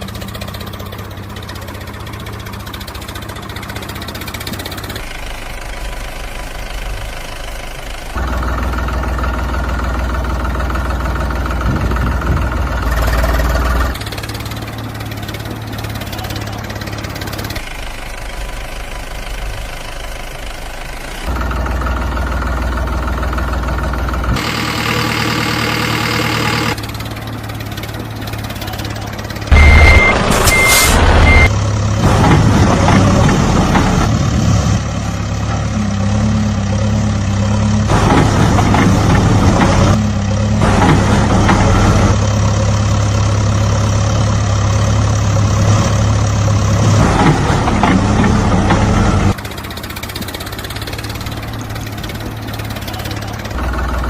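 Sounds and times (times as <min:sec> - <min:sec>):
heavy vehicle engines idling: 0:00.0 - 0:54.0
short high beeps: 0:29.5 - 0:31.5.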